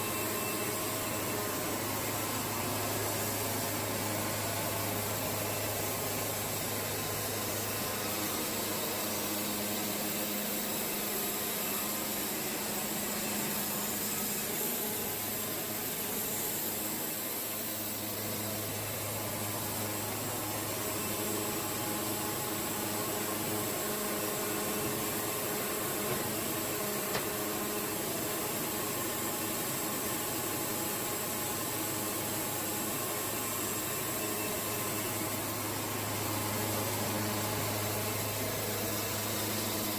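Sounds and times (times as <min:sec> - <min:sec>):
band sawmill running: 0:00.0 - 0:39.9.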